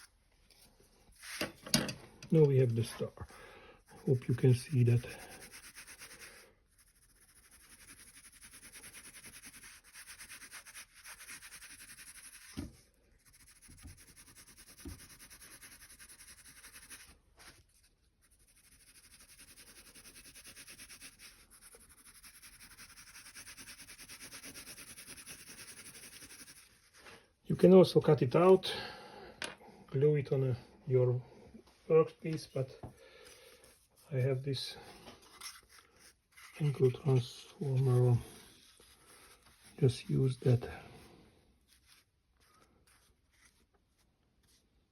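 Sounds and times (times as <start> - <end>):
scratchy rubbing on paper: 2.8 - 27.0, 35.2 - 40.7, 41.7 - 44.7.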